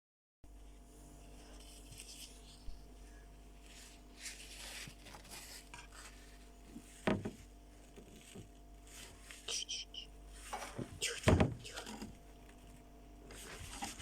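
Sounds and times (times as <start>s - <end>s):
thump: 7.0s - 7.4s, 10.8s - 11.6s.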